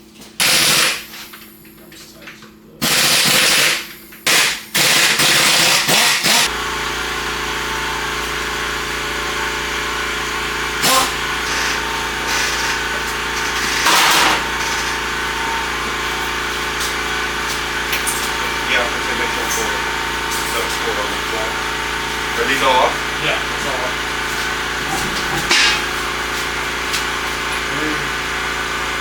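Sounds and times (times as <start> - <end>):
air compressor motor humming: 0.0 - 29.0
pneumatic impact wrench hammering: 0.2 - 1.7, 2.8 - 6.6, 8.2 - 22.3, 24.3 - 27.8.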